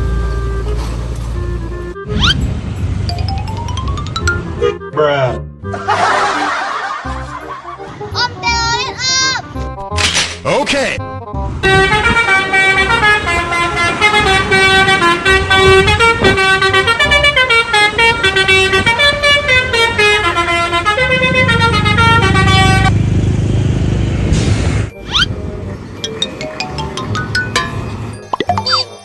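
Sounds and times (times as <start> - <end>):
multi-tone bus horn tune: 0.0 - 2.2, 3.8 - 5.0, 11.5 - 23.0.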